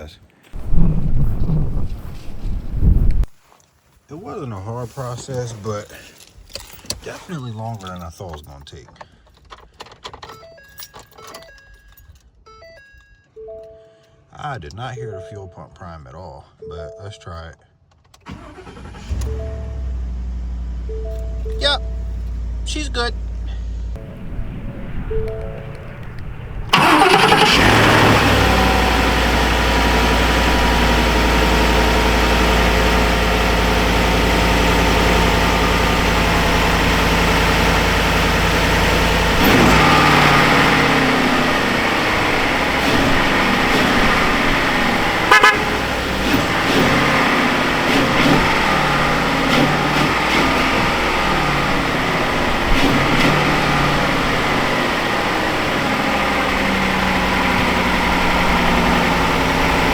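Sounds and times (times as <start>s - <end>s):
truck engine starting and idling: 0.5s - 3.3s, 18.1s - 59.9s.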